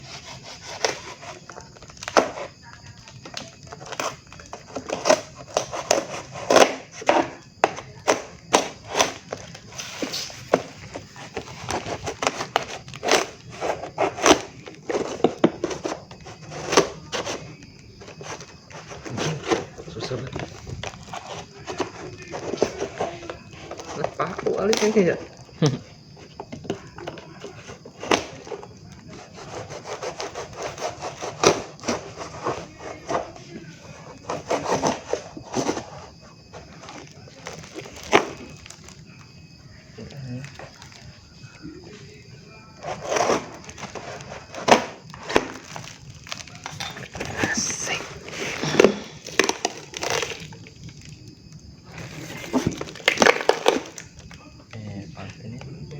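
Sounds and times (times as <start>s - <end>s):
scraping and rubbing: 0.0s - 2.6s, 27.4s - 37.0s, 42.8s - 50.6s.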